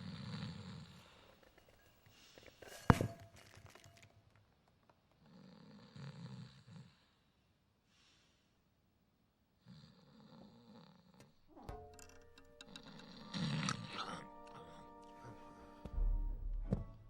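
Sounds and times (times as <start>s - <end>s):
faint breath: 0.0s - 2.9s, 6.7s - 8.7s.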